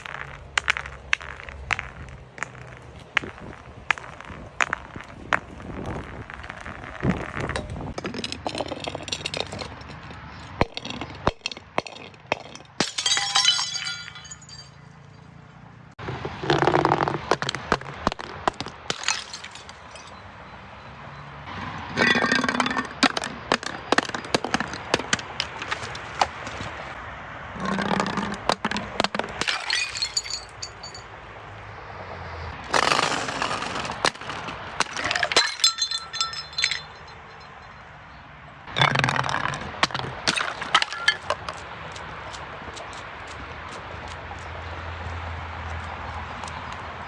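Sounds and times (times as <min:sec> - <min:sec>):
glass bottles breaking: 0:10.5 - 0:15.0, 0:18.6 - 0:20.2, 0:22.0 - 0:24.6, 0:28.0 - 0:31.1, 0:32.7 - 0:37.8, 0:38.8 - 0:41.4
tinkling glass shards: 0:35.4 - 0:37.8.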